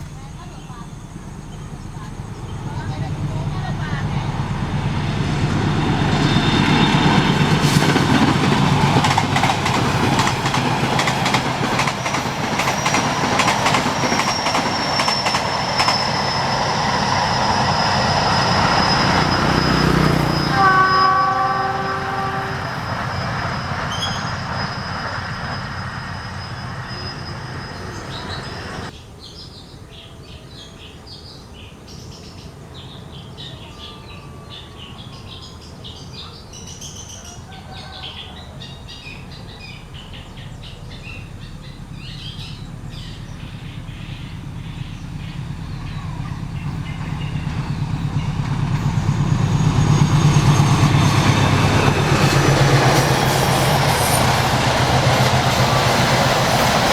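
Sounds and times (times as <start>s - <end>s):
train wheel noise: 0.0s - 29.0s, 36.8s - 56.9s
birds chirping: 0.0s - 31.2s, 31.9s - 56.9s
train rumbling past: 0.0s - 56.9s.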